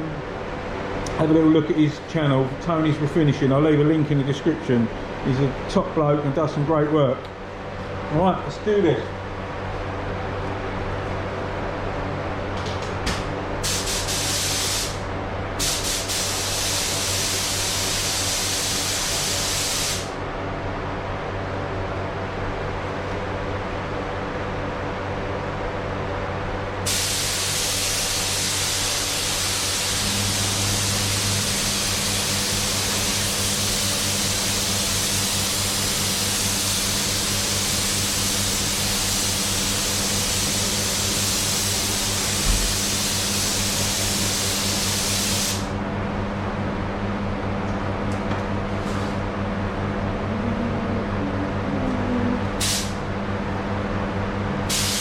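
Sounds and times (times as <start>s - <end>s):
steady low hum: 0.0s - 44.4s, 45.1s - 55.0s
paint spray gun hissing: 13.6s - 15.0s, 15.6s - 20.2s, 26.9s - 45.7s, 52.6s - 53.0s, 54.7s - 55.0s.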